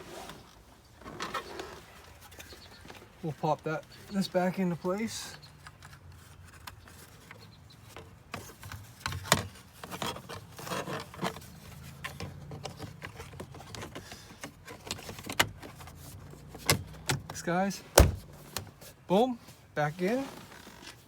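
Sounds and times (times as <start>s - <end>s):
plastic rubbing: 5.5s - 19.0s.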